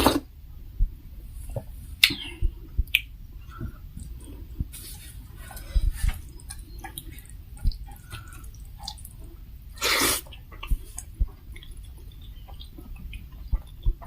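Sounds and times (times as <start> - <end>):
chewing and mouth clicks: 5.5 - 14.0.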